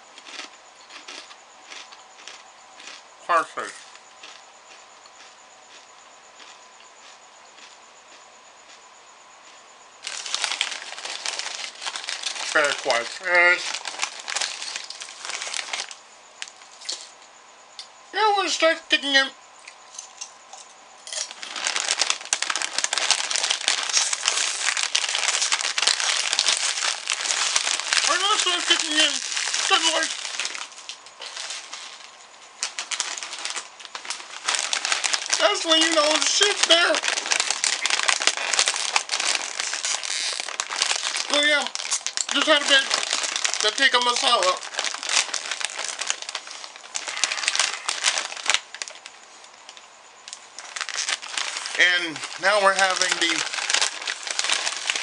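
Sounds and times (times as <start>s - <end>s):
chip bag crinkling: 0.2s - 4.4s, 10.0s - 17.1s, 21.1s - 55.0s.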